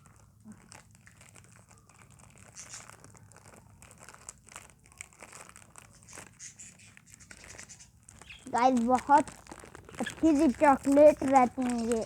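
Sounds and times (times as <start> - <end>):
snack packaging crinkling: 0.0 - 12.0.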